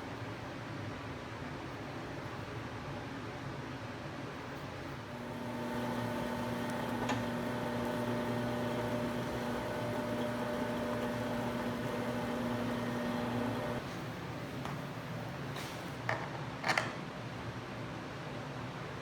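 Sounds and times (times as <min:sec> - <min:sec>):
electric motor humming: 0:05.1 - 0:13.8.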